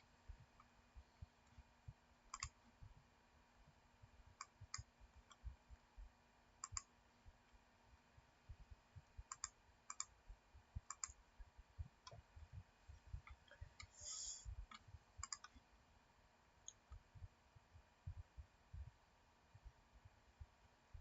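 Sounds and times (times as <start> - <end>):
faint clicks: 2.3 - 2.6, 9.3 - 10.1, 13.2 - 15.7
brief hiss: 13.9 - 14.5.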